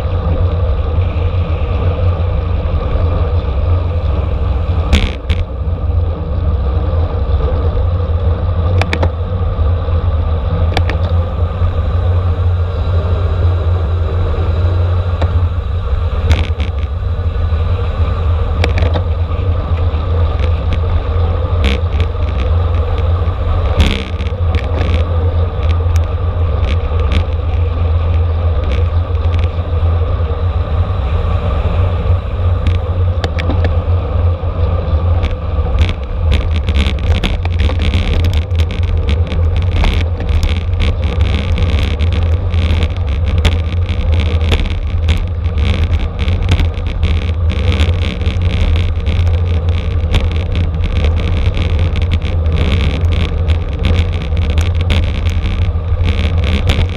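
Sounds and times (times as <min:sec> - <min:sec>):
tyre and road noise: 0:00.0 - 0:56.9
wind rushing over microphone: 0:00.0 - 0:56.9
sharp clicks: 0:35.2 - 0:56.9.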